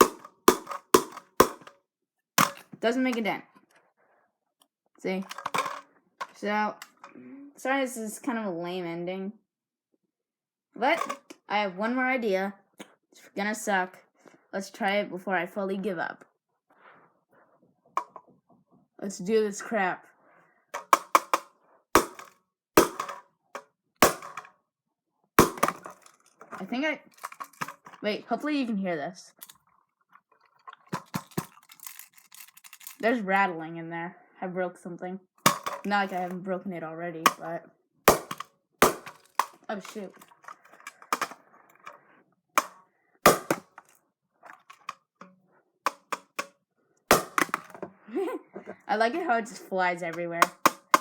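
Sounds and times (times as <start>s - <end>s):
plastic mouse shell knocks: 0.0s - 1.7s, 20.8s - 23.2s, 25.4s - 25.9s.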